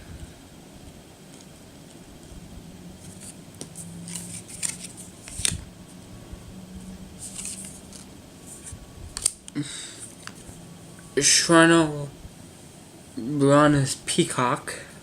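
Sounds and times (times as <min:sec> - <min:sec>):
cards and wrapper rustling: 0:03.0 - 0:05.7, 0:07.2 - 0:09.4.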